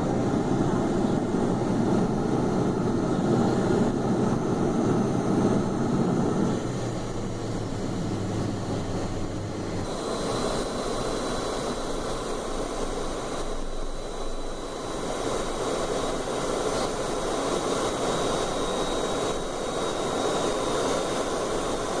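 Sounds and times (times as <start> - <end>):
high jet whine: 0.0 - 22.0
jet engines rushing: 0.0 - 22.0.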